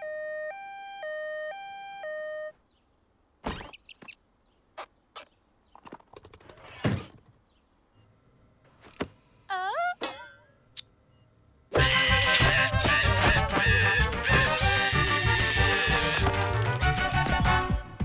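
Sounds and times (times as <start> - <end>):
two-tone cartoon siren: 0.0 - 2.6, 11.8 - 16.3.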